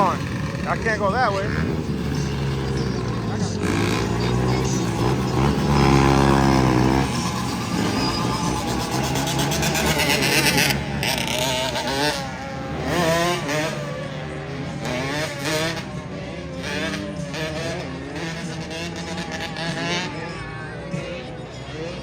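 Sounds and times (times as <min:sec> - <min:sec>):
crowd noise: 0:00.0 - 0:22.0
motor engines revving: 0:00.0 - 0:22.0.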